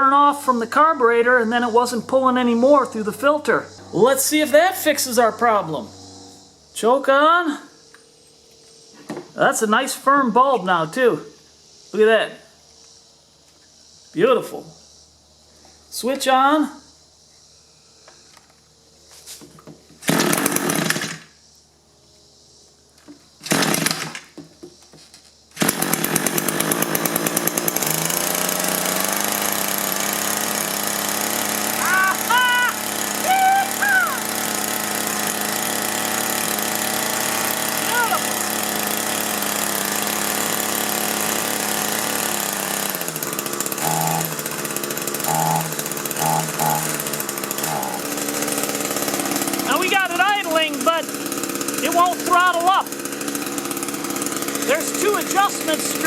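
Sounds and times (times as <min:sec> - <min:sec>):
hedge trimmer engine running: 0:00.0 - 0:06.8, 0:20.0 - 0:21.3, 0:23.4 - 0:24.3, 0:25.5 - 0:56.0
hedge trimmer pull-start: 0:19.9 - 0:21.4, 0:23.4 - 0:24.4, 0:25.0 - 0:56.0.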